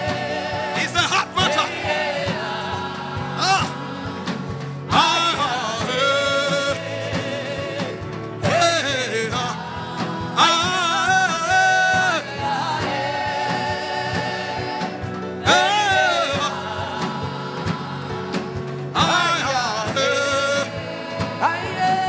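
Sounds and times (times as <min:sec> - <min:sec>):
instrumental backing with beat: 0:00.0 - 0:22.0
person singing: 0:03.2 - 0:22.0.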